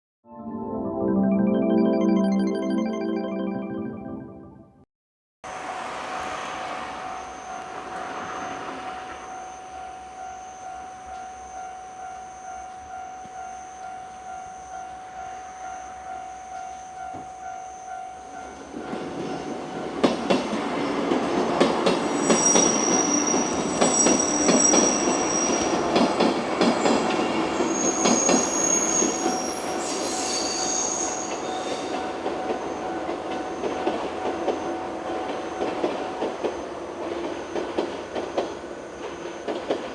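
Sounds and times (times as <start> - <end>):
level crossing bell ringing: 0.4 - 4.6
train passing: 5.5 - 39.9
wheels squealing: 22.0 - 32.0
wheels clicking over rail joints: 31.9 - 39.9.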